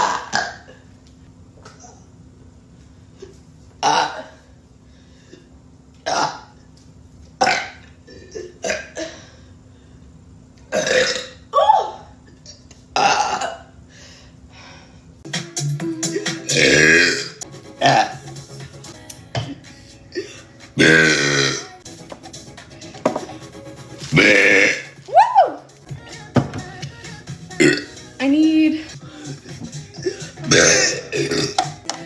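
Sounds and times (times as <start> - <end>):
person burping: 0.0 - 0.8, 3.8 - 4.4, 6.0 - 6.5, 7.4 - 9.2, 10.7 - 11.5, 13.0 - 13.7, 16.1 - 18.2, 20.1 - 21.7, 24.1 - 25.0, 27.6 - 28.0, 29.9 - 31.8
background music: 15.3 - 32.0.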